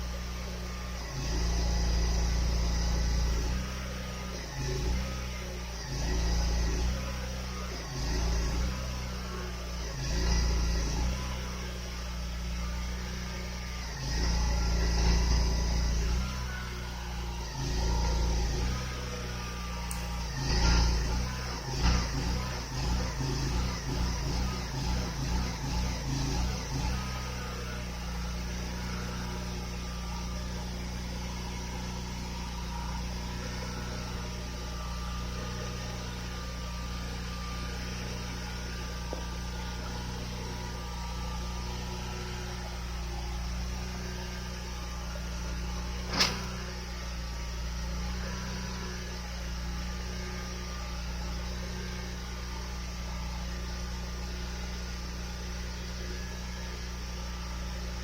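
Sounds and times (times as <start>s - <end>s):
sharp click: 46.1s - 46.6s.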